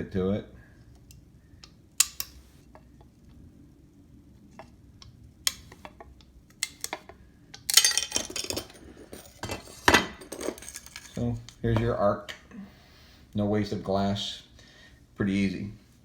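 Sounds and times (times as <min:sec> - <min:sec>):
glass clinking: 0:07.7 - 0:11.1.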